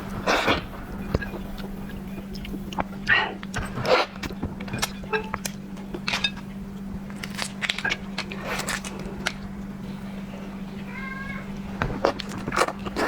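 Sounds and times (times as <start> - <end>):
steady low hum: 0.0 - 13.0
shellfish shell cracking: 4.7 - 9.5.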